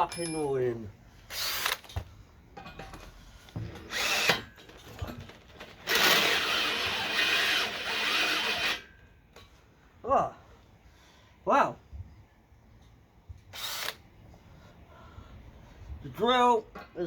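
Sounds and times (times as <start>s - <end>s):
electric drill boring into steel: 3.9s - 4.5s, 5.8s - 8.9s, 13.6s - 14.0s.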